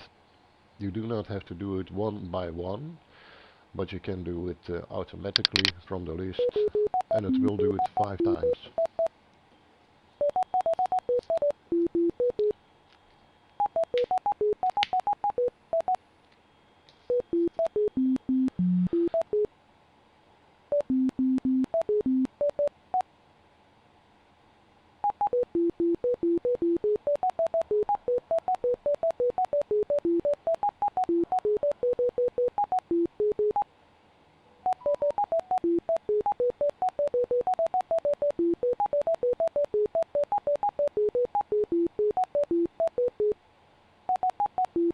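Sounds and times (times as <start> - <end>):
short electronic beeps: 34.6 - 43.4.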